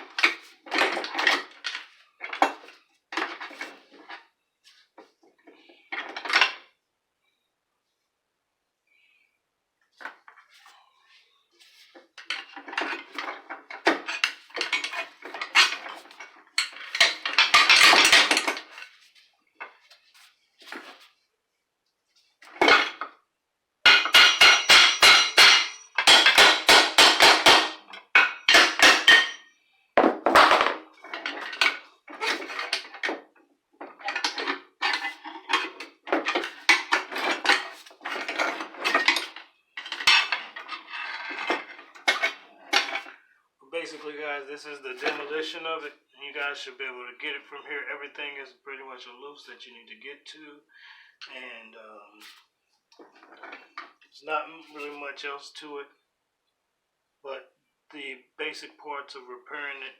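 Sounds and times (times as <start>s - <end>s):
metal parts clanking and rattling: 0.0s - 4.2s, 5.9s - 6.7s, 12.2s - 19.0s, 22.5s - 23.1s, 23.9s - 43.2s, 53.0s - 53.9s
knocks and scrapes: 0.0s - 6.5s, 10.0s - 21.2s, 30.0s - 43.1s, 53.0s - 54.0s.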